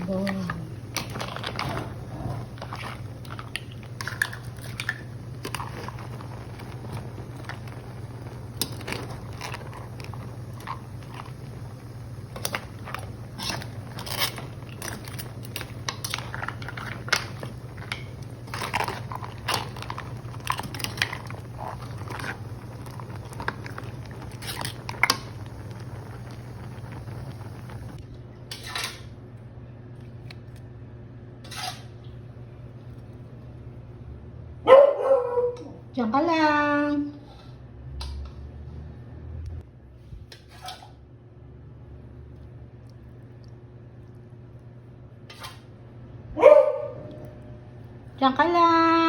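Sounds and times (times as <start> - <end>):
steady low hum: 0.0 - 37.9
crunching and chewing: 1.0 - 27.0, 42.3 - 44.8.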